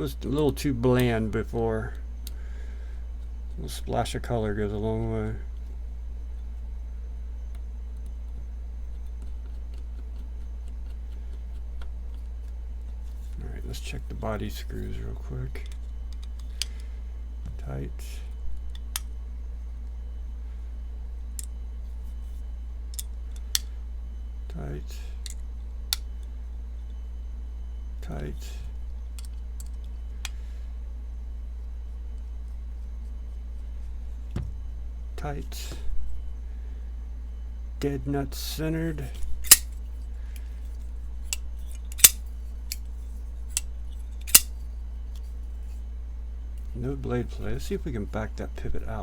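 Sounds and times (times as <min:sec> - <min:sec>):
steady low hum: 0:00.0 - 0:49.0
folding knife metallic clicks: 0:39.4 - 0:39.7, 0:41.3 - 0:42.8, 0:44.3 - 0:44.5.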